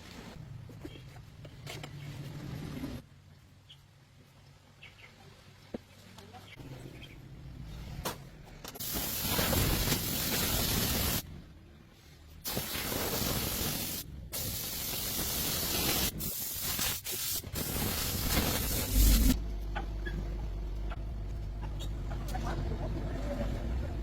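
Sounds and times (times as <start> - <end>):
spray nozzle hissing: 8.8 - 11.2, 12.5 - 19.4.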